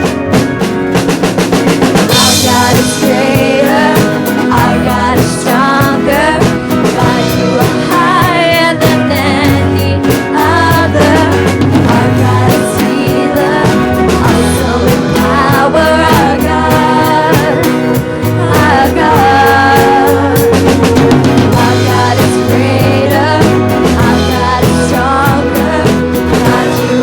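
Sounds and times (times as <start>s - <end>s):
drum kit beat: 0.0s - 27.0s
guitar: 0.0s - 27.0s
person singing: 2.1s - 27.0s.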